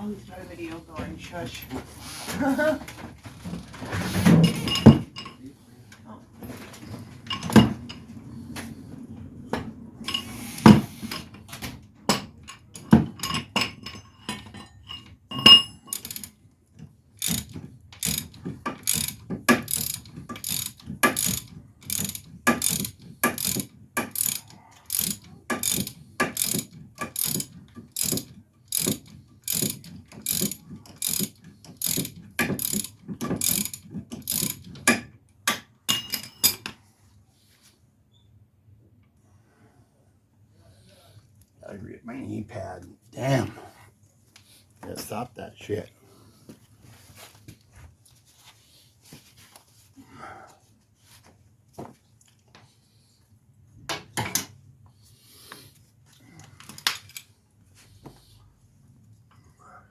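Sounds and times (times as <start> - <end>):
ratchet wrench clicking: 15.9 - 16.3, 17.2 - 34.6.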